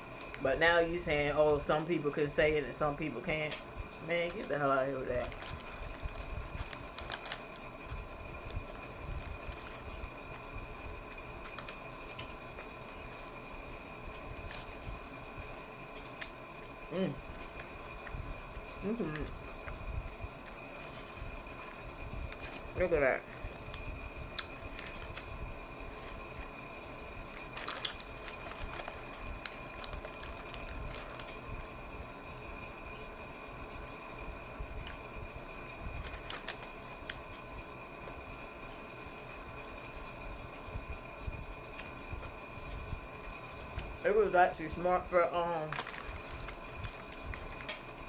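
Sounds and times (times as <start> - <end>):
faint steady whine: 0.0 - 48.0
crisp crunching: 4.1 - 32.8, 35.6 - 37.5, 45.5 - 48.0
chewing and mouth sounds: 23.4 - 26.6, 27.3 - 32.4.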